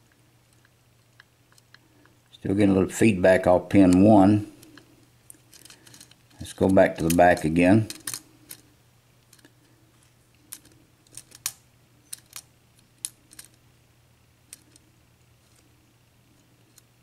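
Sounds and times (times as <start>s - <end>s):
lock pick clicking pins: 10.5s - 13.6s.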